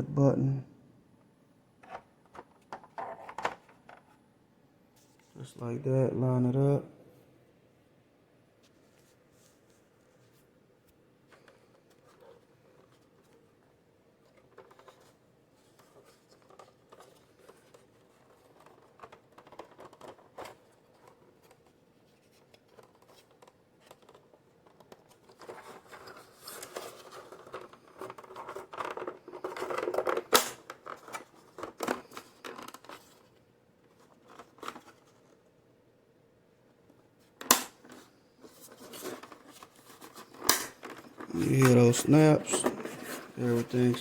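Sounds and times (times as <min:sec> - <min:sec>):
plastic parts scraping and rubbing: 0:01.8 - 0:04.2, 0:11.3 - 0:35.5, 0:36.9 - 0:44.0.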